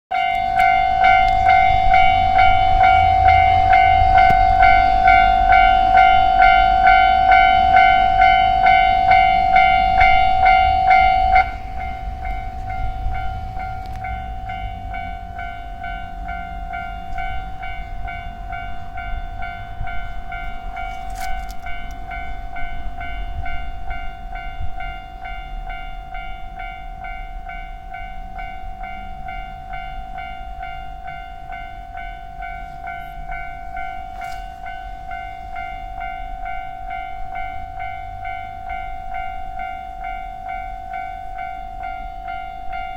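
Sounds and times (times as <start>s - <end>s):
level crossing warning bell: 0.1s - 42.9s.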